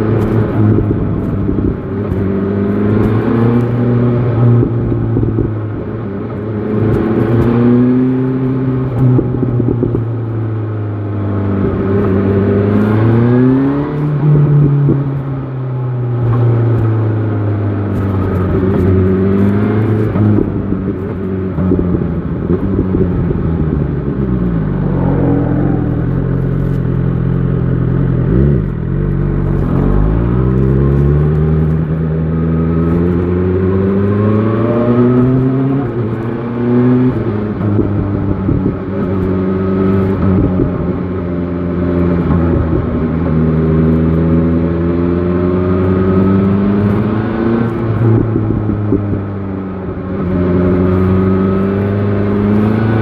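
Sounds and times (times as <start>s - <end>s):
motorcycle engine revving: 17.9s - 53.0s.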